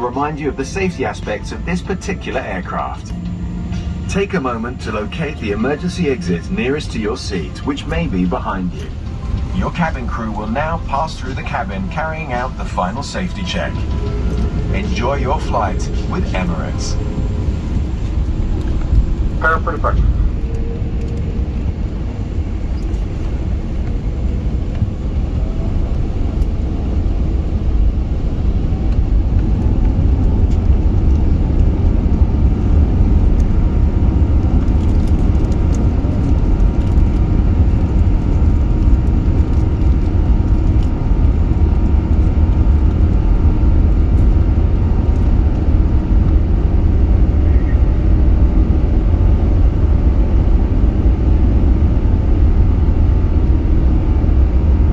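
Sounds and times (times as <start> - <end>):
jet engines rumbling in cabin: 0.0 - 54.9.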